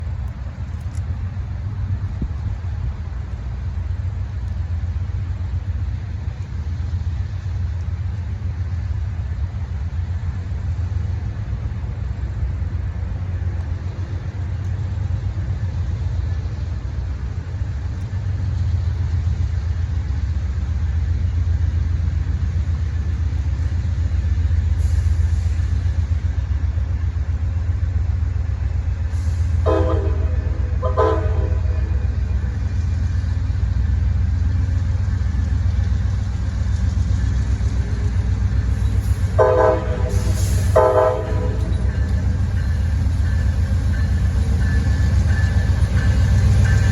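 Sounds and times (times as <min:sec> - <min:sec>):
diesel locomotive rumble: 0:00.0 - 0:46.9
locomotive horn blasts: 0:29.6 - 0:32.2, 0:39.3 - 0:41.9.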